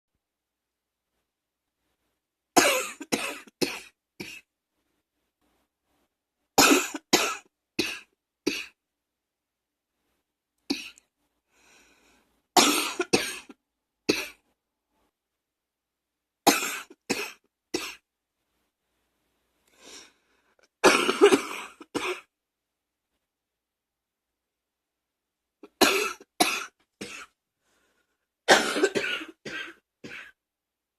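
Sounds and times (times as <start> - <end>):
person coughing: 2.6 - 4.4, 6.6 - 8.8, 12.6 - 14.4, 16.5 - 18.0, 20.8 - 22.3, 25.6 - 27.4, 28.5 - 30.4.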